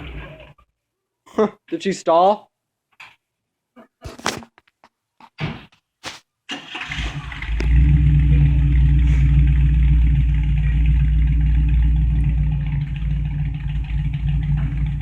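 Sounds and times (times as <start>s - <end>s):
engine running at fast idle: 7.2s - 15.0s.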